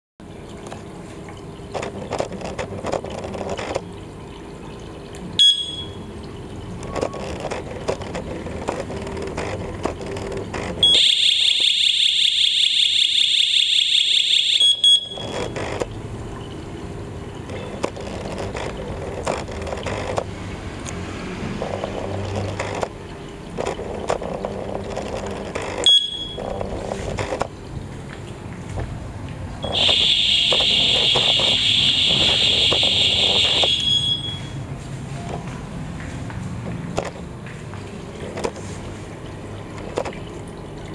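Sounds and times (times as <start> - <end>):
short electronic beeps: 5.4 - 6.1, 10.8 - 12.4, 13.2 - 15.8, 25.8 - 26.5, 29.6 - 34.6
high-pitched alarm siren: 10.8 - 15.8, 29.6 - 34.6.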